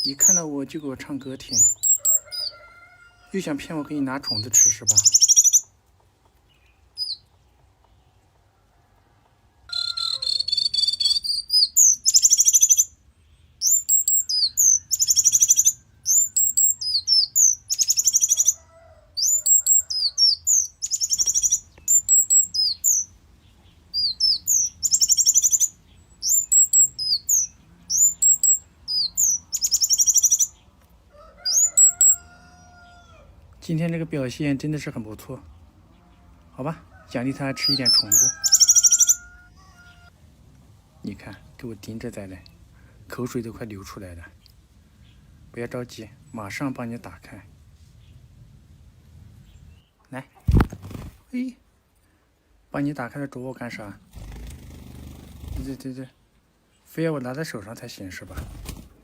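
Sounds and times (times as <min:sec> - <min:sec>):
small songbird chirping and trilling: 0:00.0 - 0:02.6, 0:03.4 - 0:05.8, 0:06.5 - 0:08.1, 0:09.7 - 0:18.6, 0:19.2 - 0:30.7, 0:31.5 - 0:33.1, 0:37.6 - 0:40.1.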